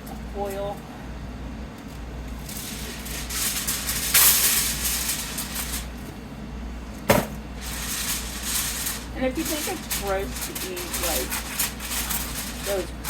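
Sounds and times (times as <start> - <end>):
aluminum foil crinkling: 1.8 - 6.1, 6.9 - 13.0.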